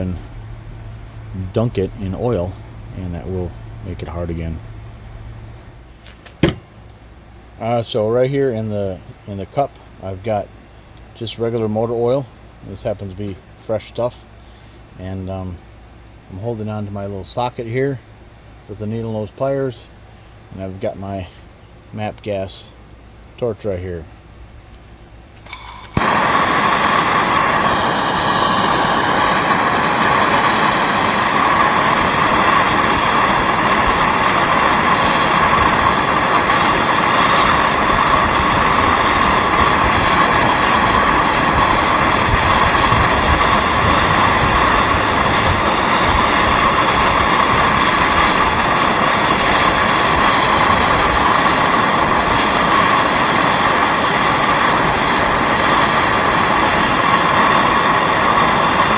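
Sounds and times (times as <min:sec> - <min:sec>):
gas torch flame hissing: 0:00.0 - 0:13.3, 0:25.4 - 0:58.9.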